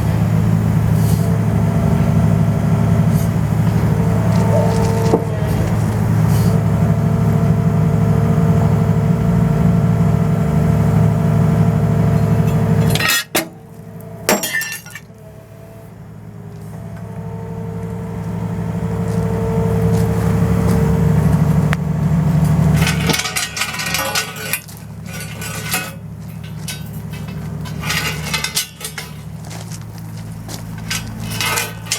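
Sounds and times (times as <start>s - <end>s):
engine and hydraulics humming: 0.0s - 31.9s
metal pieces clinking: 14.3s - 15.1s, 22.8s - 29.9s, 30.7s - 31.9s.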